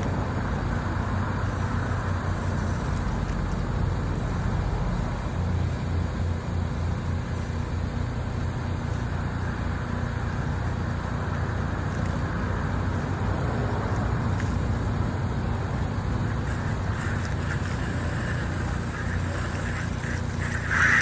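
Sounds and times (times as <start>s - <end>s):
pressure washer engine running: 0.0s - 21.0s
steady hiss: 0.0s - 21.0s.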